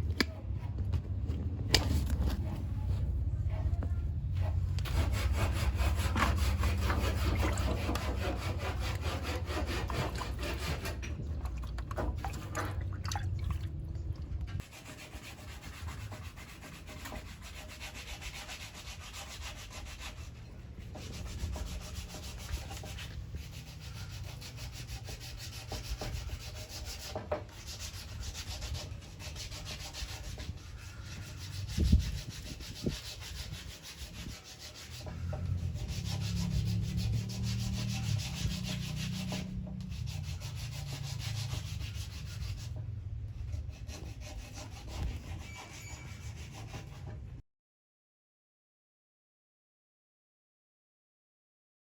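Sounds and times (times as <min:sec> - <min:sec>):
wooden boards being sanded: 0:04.4 - 0:11.0, 0:14.6 - 0:42.8, 0:43.4 - 0:47.1.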